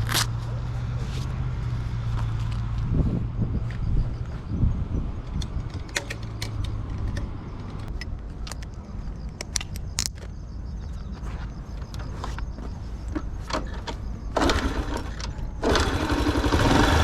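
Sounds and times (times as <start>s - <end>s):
sharp clicks and rattles: 5.2s - 10.4s
motorcycle engine running: 14.4s - 17.0s.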